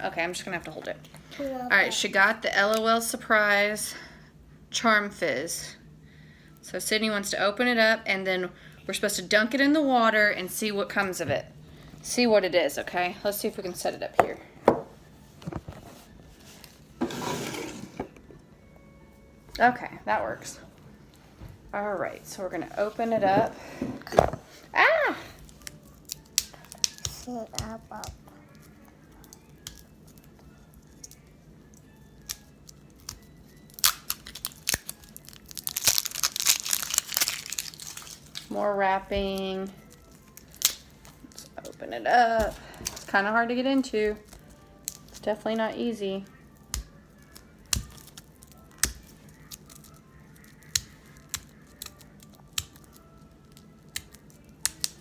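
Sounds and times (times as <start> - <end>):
packaging wrap crinkling: 31.9 - 38.6, 39.7 - 41.8, 46.6 - 55.0.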